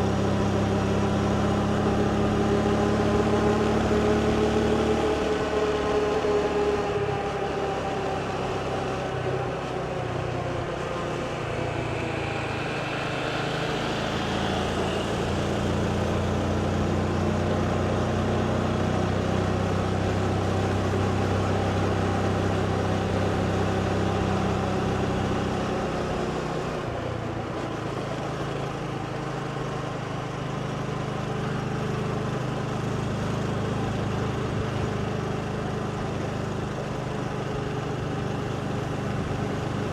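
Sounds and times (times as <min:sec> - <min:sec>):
motorbike engine running: 0:10.7 - 0:39.9.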